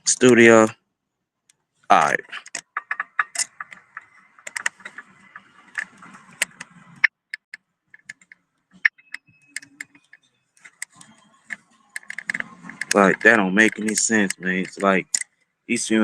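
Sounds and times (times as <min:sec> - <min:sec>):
computer keyboard typing: 0:02.4 - 0:15.2.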